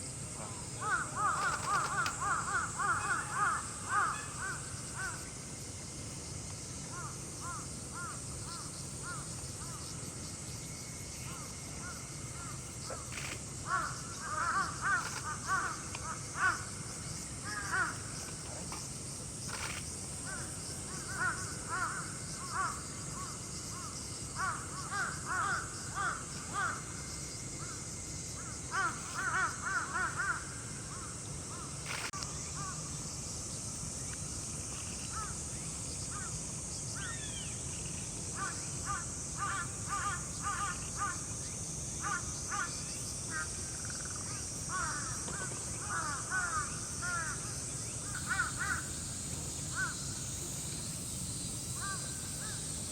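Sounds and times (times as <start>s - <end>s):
steady high-pitched hiss: 0.0s - 52.9s
crows cawing: 0.8s - 5.1s, 13.7s - 16.6s, 45.8s - 47.4s, 48.1s - 48.9s.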